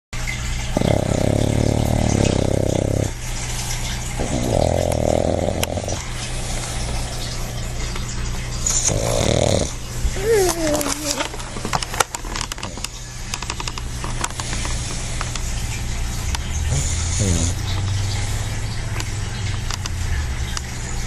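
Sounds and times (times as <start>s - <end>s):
dog snoring: 0.7s - 3.2s, 4.2s - 7.9s, 8.6s - 11.1s, 16.6s - 17.9s.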